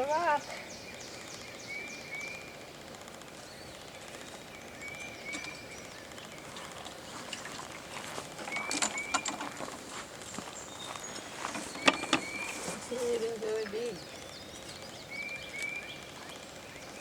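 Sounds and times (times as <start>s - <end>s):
bird whistling: 0.4s - 2.5s, 10.7s - 12.6s, 13.9s - 16.8s
sharp clicks and knocks: 8.4s - 9.8s, 11.4s - 12.4s.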